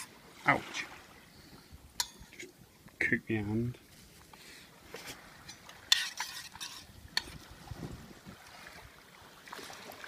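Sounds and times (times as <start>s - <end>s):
spoon scraping in metal pot: 5.9s - 7.4s.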